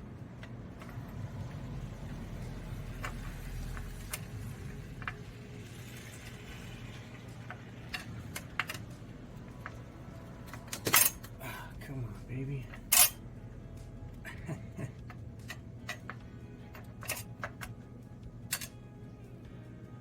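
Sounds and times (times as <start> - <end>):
steady low hum: 0.0 - 20.0
metal tools clicking: 7.4 - 9.8, 10.4 - 11.4, 12.6 - 13.2, 15.4 - 17.8, 18.5 - 18.8.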